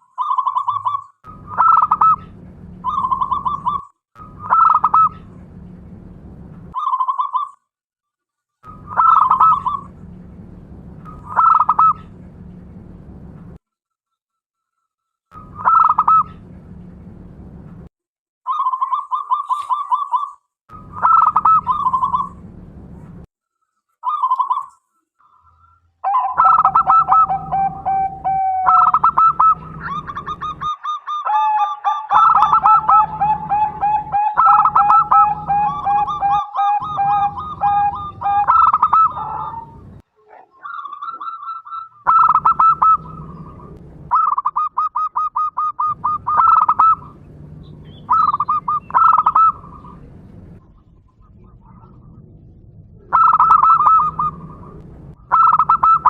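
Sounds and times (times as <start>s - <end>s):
doves cooing: 0.2s - 5.3s, 8.7s - 10.1s, 11.1s - 12.2s, 15.4s - 16.5s, 18.5s - 22.4s, 25.6s - 52.2s, 53.0s - 56.0s.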